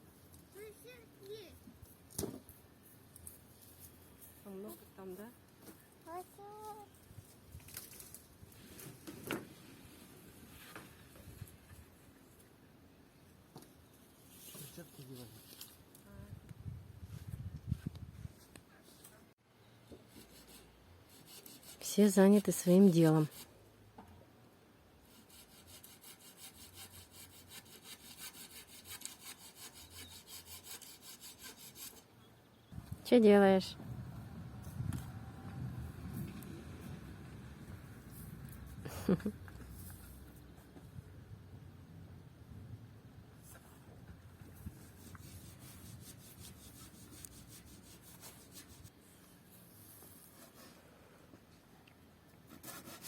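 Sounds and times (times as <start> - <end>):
hand saw cutting wood: 25.0 - 32.0.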